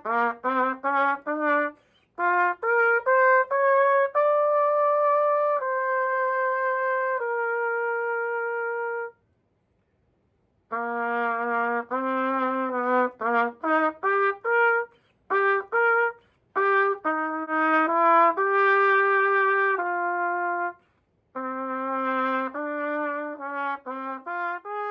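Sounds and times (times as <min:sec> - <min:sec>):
trumpet notes: 0:00.0 - 0:09.2, 0:10.7 - 0:20.8, 0:21.4 - 0:24.9.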